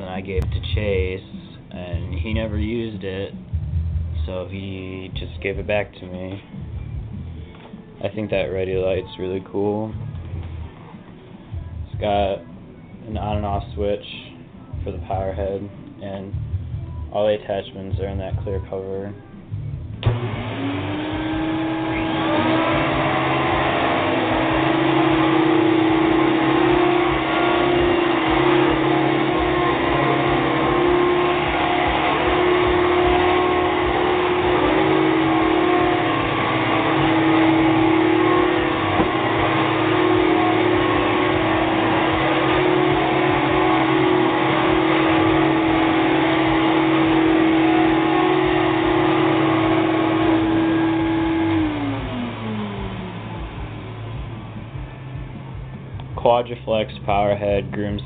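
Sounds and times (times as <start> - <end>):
vacuum cleaner running: 20.0 - 55.9.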